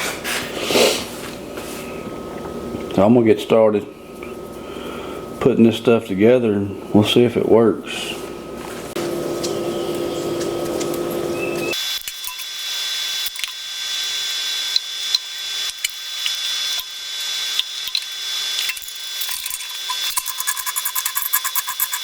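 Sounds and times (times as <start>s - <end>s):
hand tool rasping metal: 14.7s - 22.0s.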